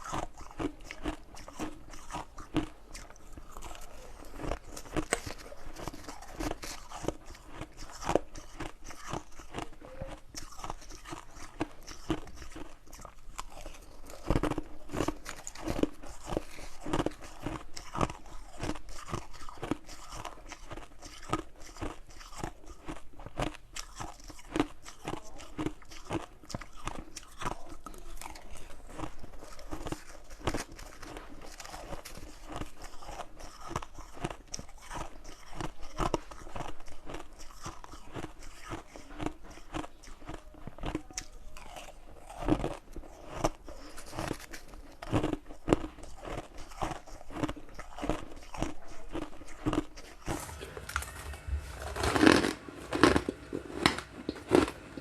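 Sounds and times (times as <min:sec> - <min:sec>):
crisp chewing crunches: 0:00.0 - 0:55.0.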